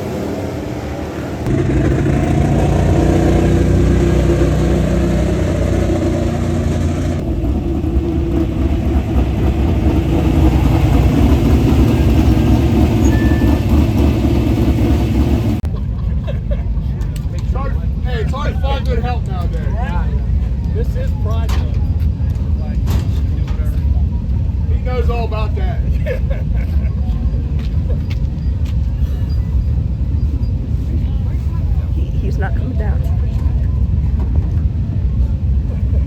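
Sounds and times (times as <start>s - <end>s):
race car engine running hard: 0.0s - 15.7s.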